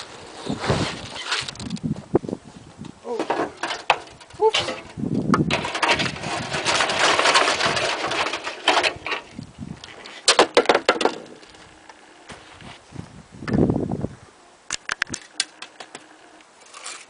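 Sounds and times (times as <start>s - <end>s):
wet concrete scraping: 3.2s - 10.3s, 16.6s - 17.0s.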